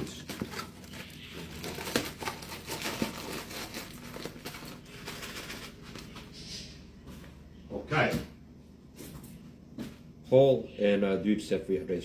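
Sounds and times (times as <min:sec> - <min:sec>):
bag crinkling and rustling: 0:00.0 - 0:06.4.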